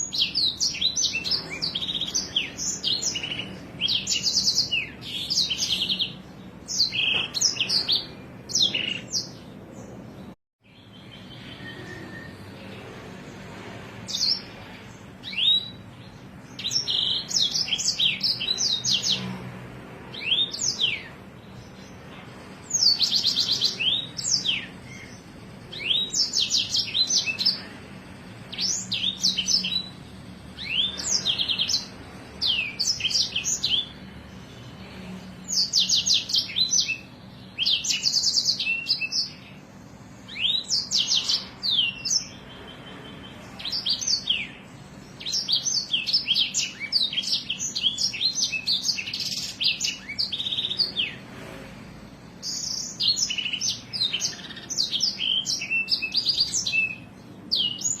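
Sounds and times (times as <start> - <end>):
songbird trilling and whistling: 0.0 - 9.5, 15.2 - 19.2, 22.6 - 27.7, 28.5 - 34.0, 35.5 - 39.6, 40.2 - 51.2, 52.4 - 58.0.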